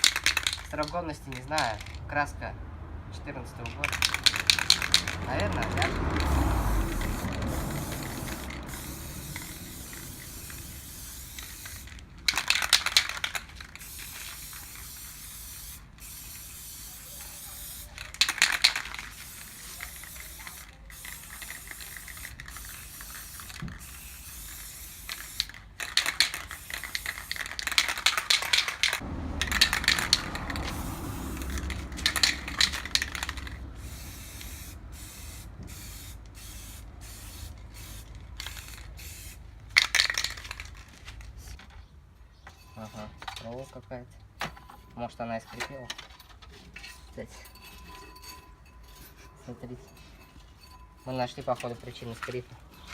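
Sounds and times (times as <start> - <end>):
spray-paint can hissing: 3.8 - 40.7.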